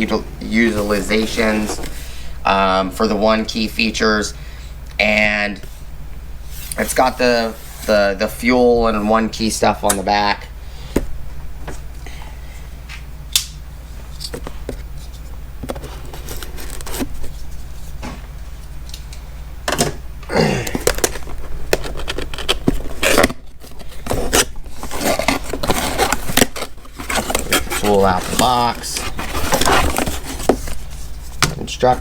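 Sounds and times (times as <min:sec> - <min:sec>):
cardboard packaging scraping and tearing: 0:00.6 - 0:01.9, 0:15.8 - 0:17.4, 0:20.9 - 0:31.2.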